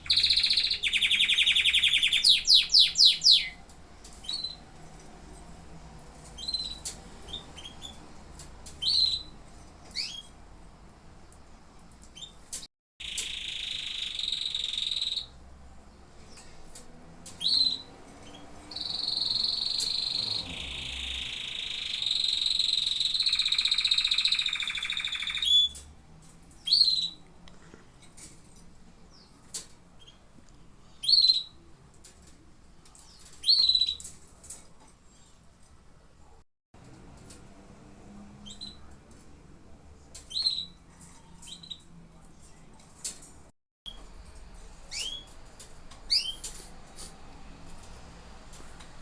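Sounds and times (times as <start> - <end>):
canaries trilling: 0.0 - 4.7, 6.2 - 10.4, 12.2 - 15.4, 16.2 - 25.9, 26.5 - 27.2, 33.0 - 34.6, 38.4 - 39.0, 40.1 - 41.9, 44.8 - 47.1.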